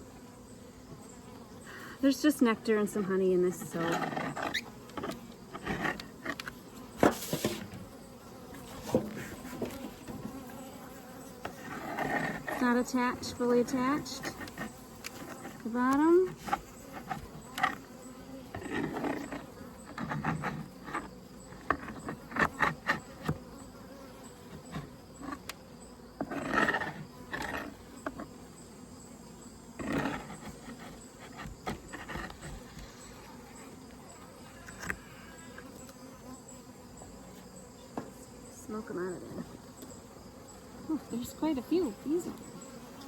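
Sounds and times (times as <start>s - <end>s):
honeybees buzzing: 0.0s - 43.0s
knocks and clicks of hive frames: 8.5s - 10.5s, 11.3s - 28.4s, 29.8s - 33.0s, 37.9s - 38.2s.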